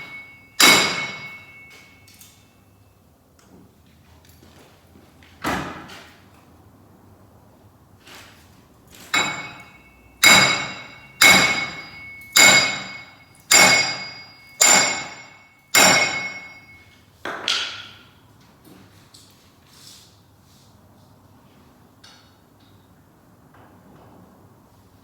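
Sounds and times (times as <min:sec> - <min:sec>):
hammer striking steel: 0:00.0 - 0:02.3, 0:09.1 - 0:16.8.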